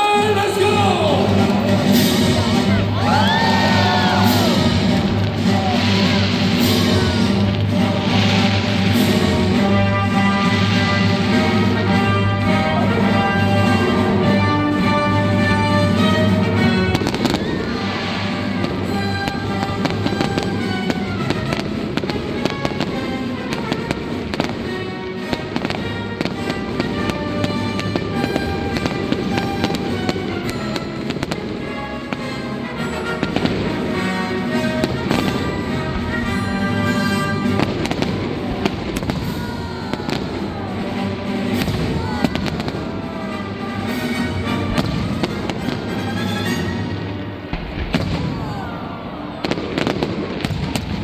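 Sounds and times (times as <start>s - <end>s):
loud music: 0.0s - 22.9s, 32.4s - 48.7s
fireworks bursting and crackling: 0.0s - 51.0s
whistling fireworks: 0.0s - 51.0s.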